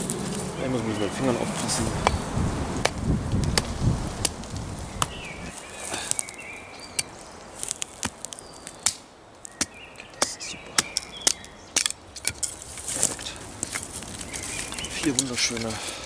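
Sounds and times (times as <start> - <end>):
low rumble: 0.0 - 4.9
birds chirping: 0.0 - 16.0.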